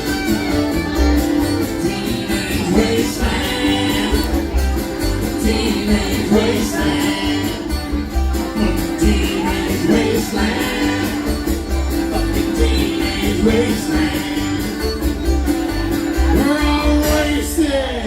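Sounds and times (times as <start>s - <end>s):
bluegrass string band: 0.0s - 18.0s.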